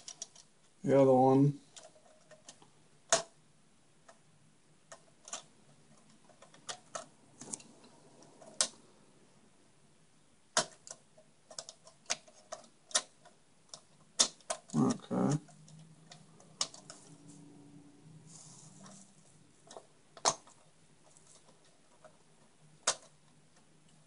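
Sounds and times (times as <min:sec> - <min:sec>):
metal and plastic clicks: 0:04.9 - 0:08.8, 0:10.5 - 0:17.0, 0:19.6 - 0:24.0.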